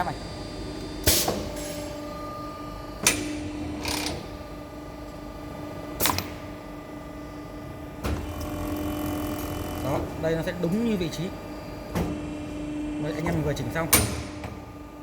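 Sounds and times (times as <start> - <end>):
motor hum: 0.0 - 15.0
machine mechanical clunks: 13.8 - 14.6.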